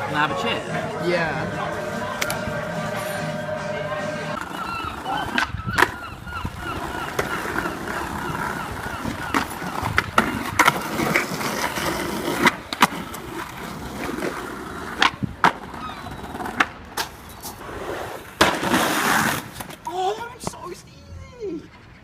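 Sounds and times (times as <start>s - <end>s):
skateboard wheels rolling: 0.0s - 20.8s
skateboard clacking on ground: 6.7s - 17.6s.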